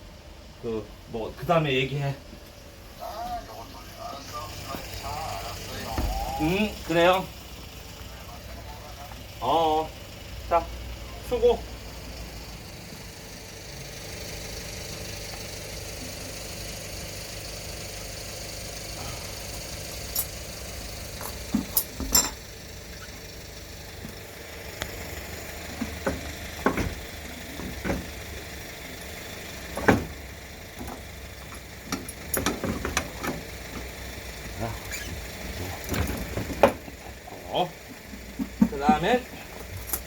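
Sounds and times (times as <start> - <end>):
steady mechanical hum: 0.0 - 40.0
tools clinking and knocking: 21.2 - 22.4, 30.8 - 33.9.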